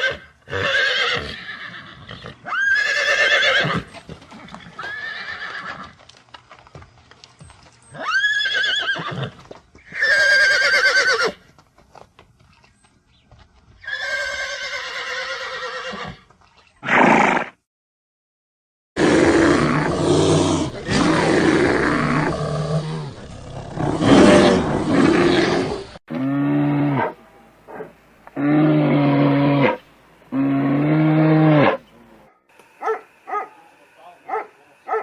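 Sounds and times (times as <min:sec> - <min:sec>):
animal roaring: 0:19.0 - 0:27.2, 0:28.4 - 0:31.8.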